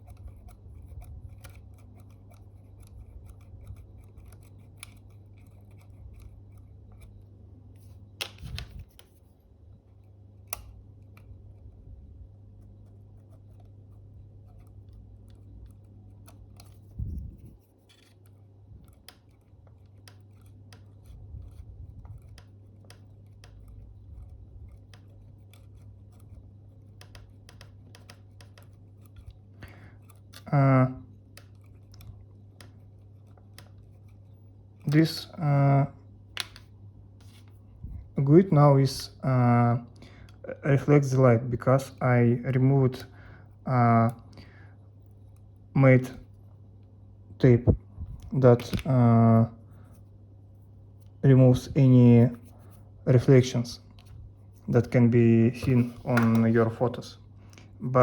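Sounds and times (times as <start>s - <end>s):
small tools clicking and scraping: 0.0s - 7.2s, 12.5s - 30.5s
low electrical hum: 0.0s - 58.0s.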